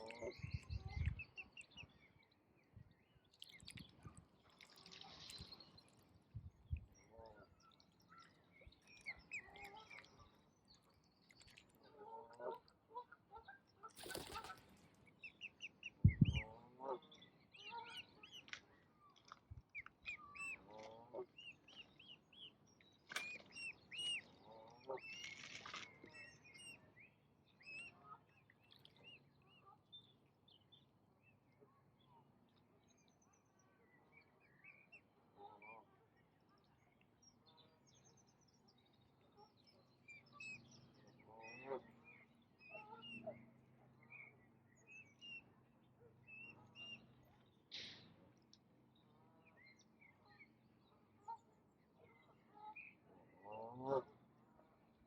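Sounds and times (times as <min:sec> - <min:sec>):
small birds chirping: 0:00.0 - 0:11.7.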